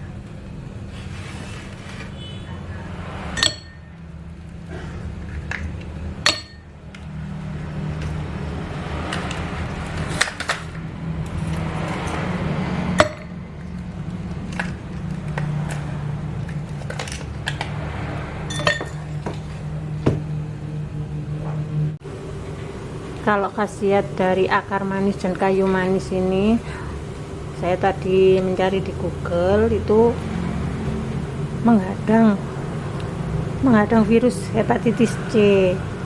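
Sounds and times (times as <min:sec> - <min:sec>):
steady low hum: 0:02.5 - 0:36.0
ice and glass clinking: 0:18.5 - 0:19.1.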